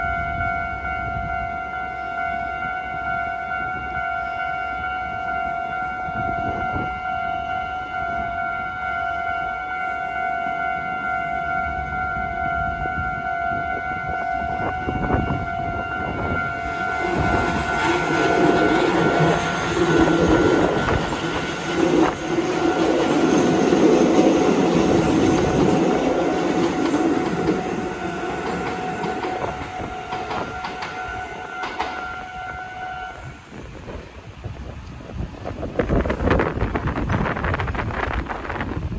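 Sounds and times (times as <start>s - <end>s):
level crossing warning bell: 16.6s - 32.9s
train wheels clattering on rails: 17.0s - 32.3s.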